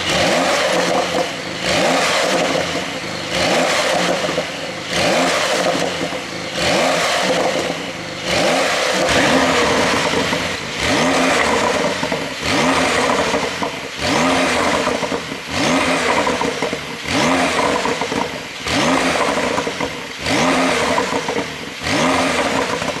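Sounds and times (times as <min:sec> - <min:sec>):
car exhaust revving in blips: 0:00.0 - 0:23.0.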